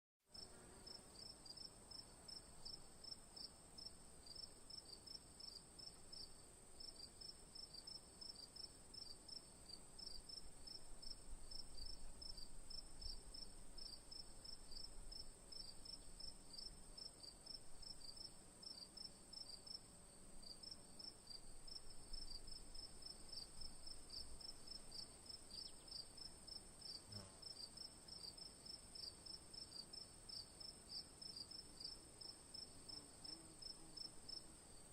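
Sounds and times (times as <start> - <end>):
continuous insect trill: 0.3 - 34.9
crickets chirping: 0.4 - 34.9.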